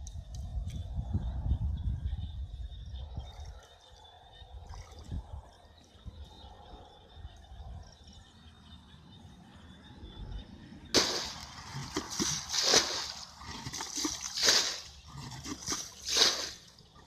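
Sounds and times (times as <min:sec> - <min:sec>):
water splashing and sloshing: 0:10.9 - 0:17.0.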